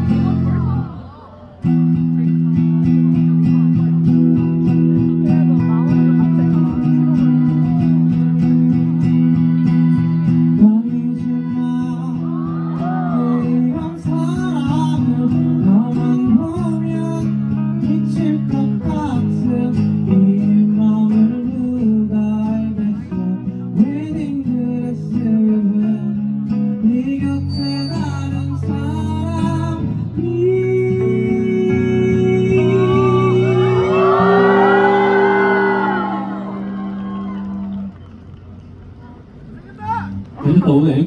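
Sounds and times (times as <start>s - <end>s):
acoustic guitar strumming: 0.0s - 1.0s, 1.6s - 37.9s
person singing: 9.3s - 26.2s, 26.8s - 36.8s.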